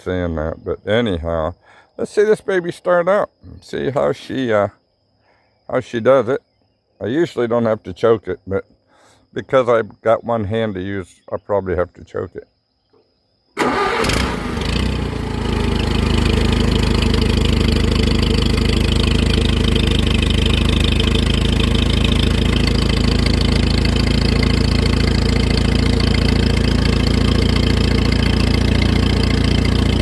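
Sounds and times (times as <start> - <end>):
tractor engine starting and idling: 13.6 - 30.0.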